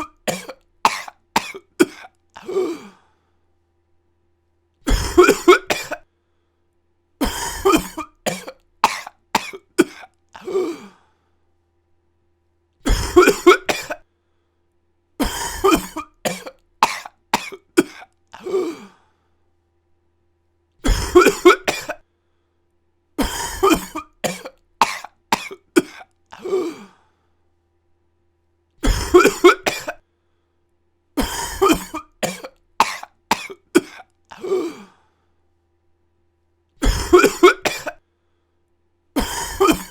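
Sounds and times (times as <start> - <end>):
person coughing: 0.0 - 3.0, 4.9 - 6.1, 7.2 - 11.0, 12.8 - 14.1, 15.2 - 19.0, 20.8 - 22.0, 23.2 - 27.0, 28.8 - 30.0, 31.2 - 35.0, 36.8 - 38.0, 39.2 - 39.9.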